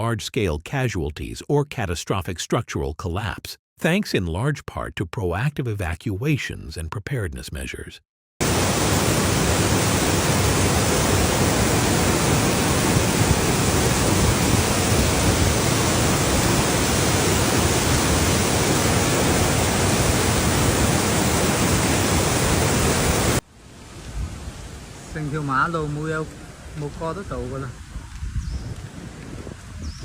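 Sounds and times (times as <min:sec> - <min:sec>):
rain: 0:08.4 - 0:29.8
wind: 0:08.4 - 0:30.0.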